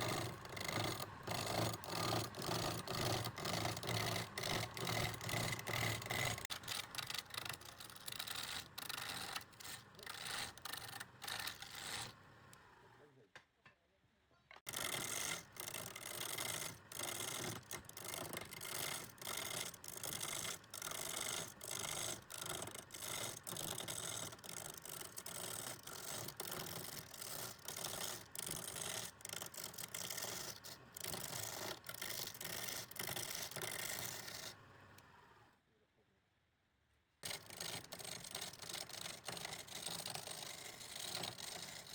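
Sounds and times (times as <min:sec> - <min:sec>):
steel tool rasping wood: 0:00.0 - 0:12.2, 0:14.7 - 0:34.6, 0:37.2 - 0:41.9.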